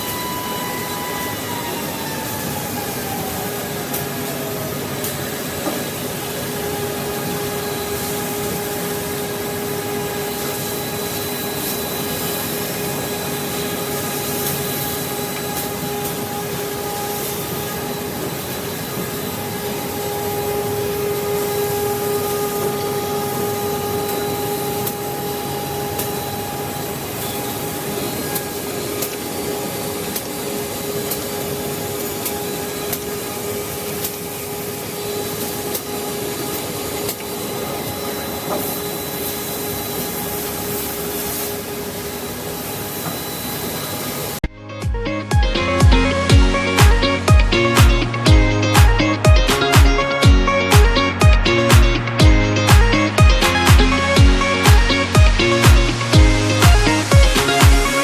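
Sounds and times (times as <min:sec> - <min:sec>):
machine motor whine: 0:00.0 - 0:44.4
rushing vacuum-like noise: 0:00.0 - 0:44.4, 0:45.5 - 0:58.0.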